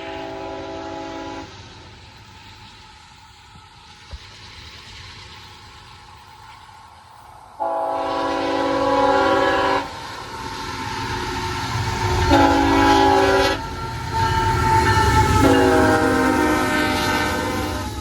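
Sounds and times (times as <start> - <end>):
locomotive air horn blasts: 0.0 - 1.5, 7.6 - 10.0, 12.1 - 18.0
low rumble of train: 0.0 - 18.0.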